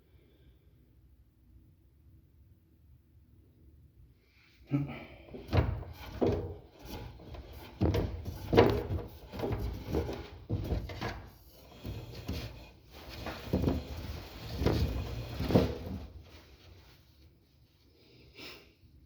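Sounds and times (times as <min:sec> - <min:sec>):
man grunting and straining: 0:04.7 - 0:05.5.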